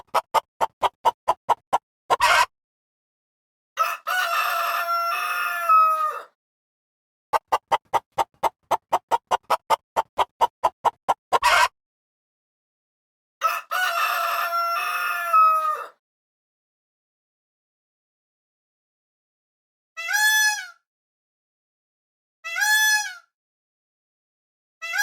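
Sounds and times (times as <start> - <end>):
chicken clucking: 0.0 - 2.5, 7.4 - 11.7
chicken squawk: 2.1 - 2.5, 3.8 - 6.3, 7.4 - 10.3, 11.3 - 11.7, 13.4 - 16.0
rooster crowing: 3.8 - 6.3, 13.4 - 15.9.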